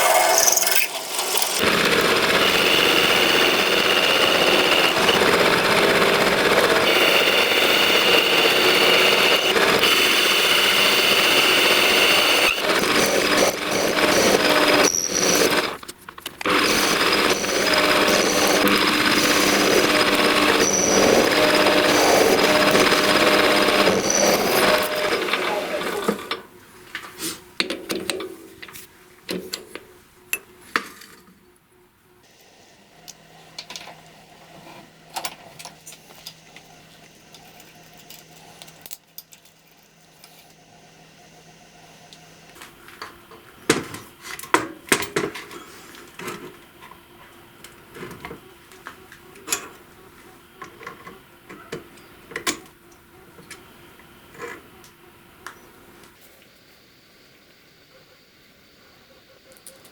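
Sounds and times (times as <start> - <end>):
metal parts clinking: 37.2 - 40.6.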